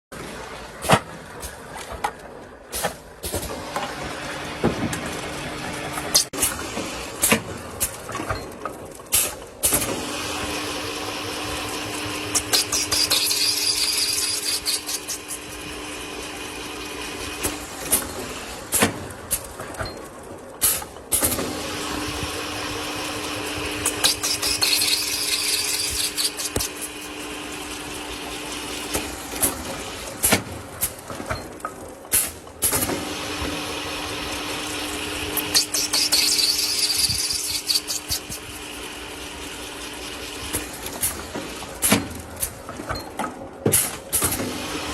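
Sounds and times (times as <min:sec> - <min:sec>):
pipe cutting machine hiss: 0:10.0 - 0:15.9, 0:21.7 - 0:29.6, 0:33.0 - 0:41.2.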